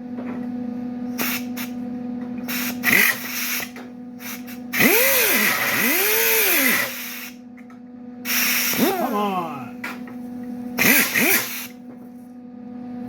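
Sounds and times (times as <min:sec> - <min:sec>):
steady hum: 0:00.0 - 0:13.0
power grinder on sheet steel: 0:04.3 - 0:07.3, 0:08.3 - 0:09.5, 0:10.8 - 0:11.7.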